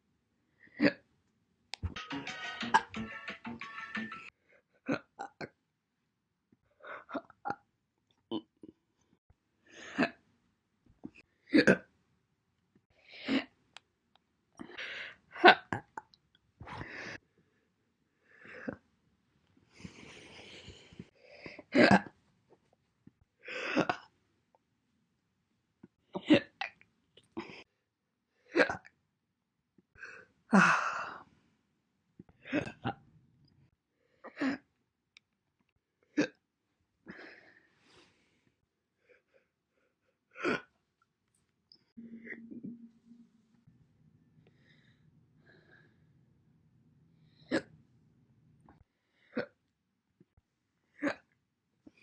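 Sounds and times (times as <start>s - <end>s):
breathing in and out: 14.6s - 15.3s, 16.6s - 18.8s, 19.6s - 21.8s, 30.0s - 31.4s, 37.1s - 40.7s, 44.3s - 46.2s, 48.8s - 49.6s.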